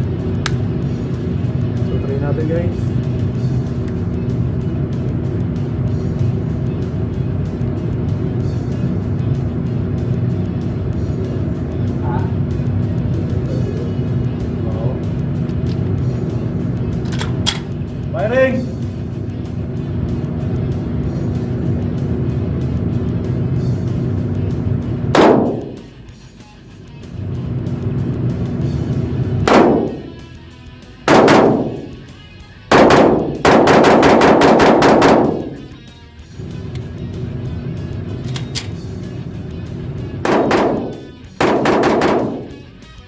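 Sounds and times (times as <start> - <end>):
background music: 0.0 - 43.0
pistol shots: 25.2 - 25.8, 29.5 - 30.1, 31.1 - 32.0, 32.7 - 35.6, 40.2 - 42.5.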